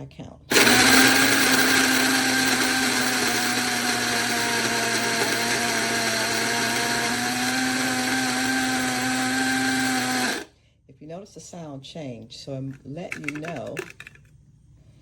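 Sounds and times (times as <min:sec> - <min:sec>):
blade grinder motor whining: 0:00.5 - 0:10.5.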